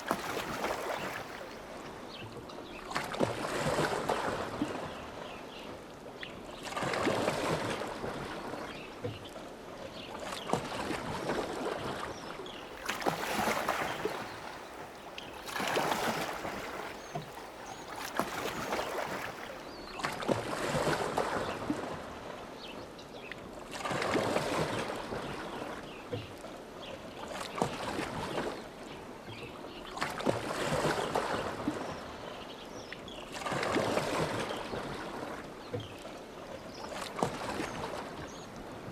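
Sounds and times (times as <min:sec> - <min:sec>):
oars splashing in water: 0:00.0 - 0:02.2, 0:10.3 - 0:21.7
quiet lapping water: 0:00.0 - 0:38.9.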